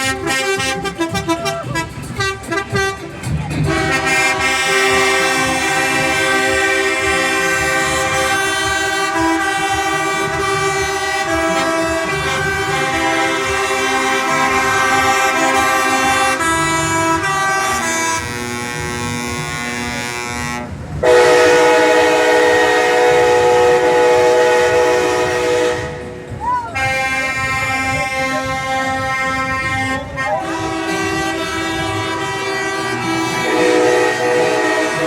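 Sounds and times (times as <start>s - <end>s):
vehicle horns honking: 0.0s - 35.0s.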